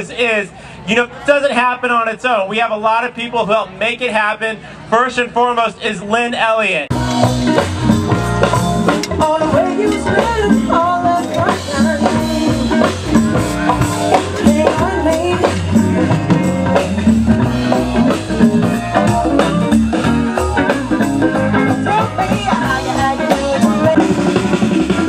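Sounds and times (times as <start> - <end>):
drum kit: 6.9 - 25.0
guitar: 6.9 - 25.0
person singing: 9.1 - 13.0, 14.1 - 16.0, 19.0 - 25.0.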